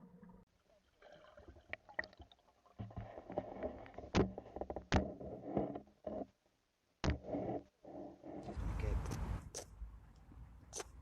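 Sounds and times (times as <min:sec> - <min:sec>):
water splashing and sloshing: 0:00.0 - 0:05.0.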